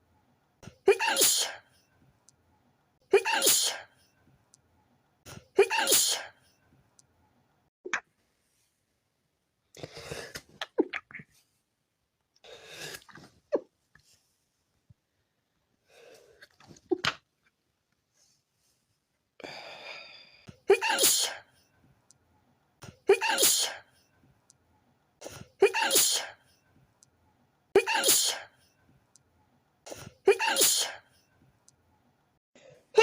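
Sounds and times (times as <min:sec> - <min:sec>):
person sneezing: 0:00.9 - 0:01.6, 0:03.1 - 0:03.8, 0:05.6 - 0:06.3, 0:20.7 - 0:21.4, 0:23.1 - 0:23.8, 0:25.2 - 0:26.4, 0:27.8 - 0:28.5, 0:29.9 - 0:31.0
breathy intakes: 0:19.4 - 0:20.6.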